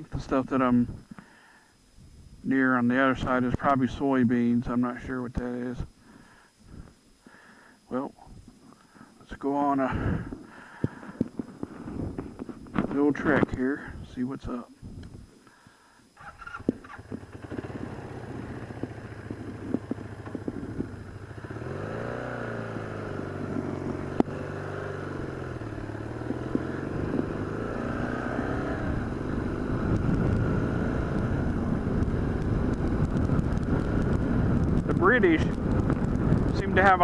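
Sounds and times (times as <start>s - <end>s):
wind and road noise: 0.0s - 4.1s, 9.2s - 37.0s
vehicle engine accelerating: 16.4s - 36.6s.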